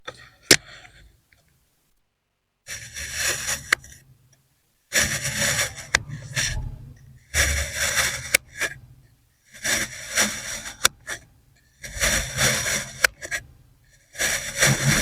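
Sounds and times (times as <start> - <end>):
gritty sand crunching scrape: 2.7 - 4.0, 4.9 - 8.8, 9.5 - 13.4, 14.0 - 15.0.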